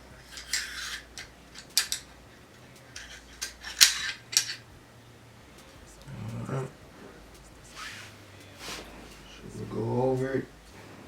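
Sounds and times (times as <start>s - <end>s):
metal scrape: 0.0s - 2.1s, 2.8s - 4.7s, 7.0s - 10.1s
metallic rifle parts clicking: 0.2s - 2.2s, 2.8s - 4.7s.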